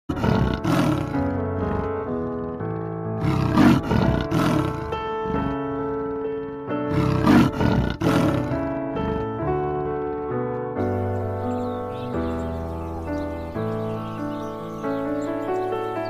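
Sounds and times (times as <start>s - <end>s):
tiger roaring: 0.1s - 6.3s, 6.9s - 10.2s
background music of held notes: 0.1s - 16.0s.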